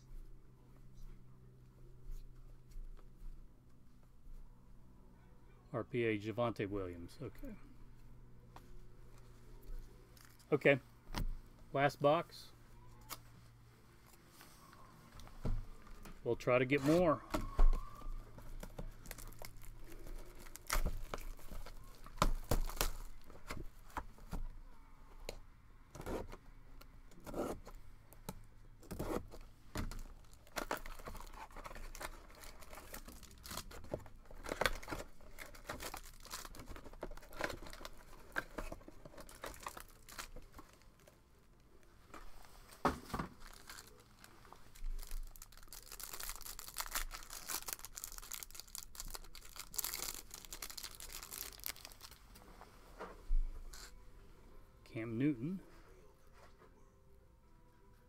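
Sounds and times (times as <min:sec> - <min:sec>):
wrappers crinkling: 0:16.6 - 0:23.6, 0:29.9 - 0:41.2, 0:43.3 - 0:52.4
card packaging tearing: 0:18.9 - 0:23.6, 0:28.9 - 0:40.8, 0:43.3 - 0:44.2, 0:44.8 - 0:52.2.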